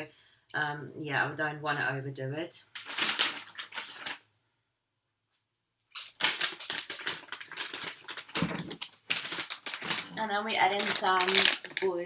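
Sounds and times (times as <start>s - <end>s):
dried fish pieces clicking in plastic bowls: 2.8s - 4.2s, 6.0s - 12.0s.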